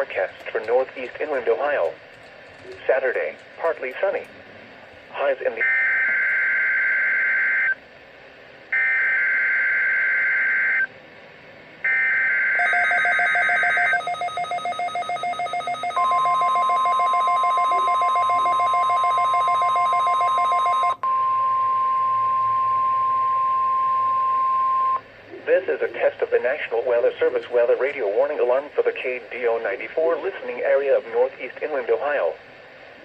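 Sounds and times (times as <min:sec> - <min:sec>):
steady alarm tone: 0:05.6 - 0:07.8, 0:08.7 - 0:10.9, 0:11.8 - 0:25.1.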